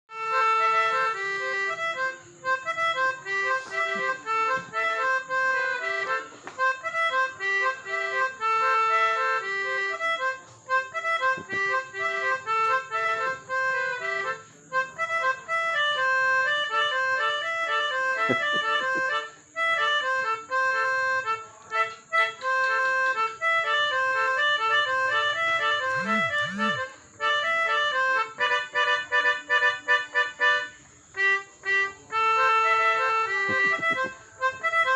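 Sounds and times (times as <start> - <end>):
musical vehicle horn tune: 0.1 - 2.1, 25.2 - 27.5.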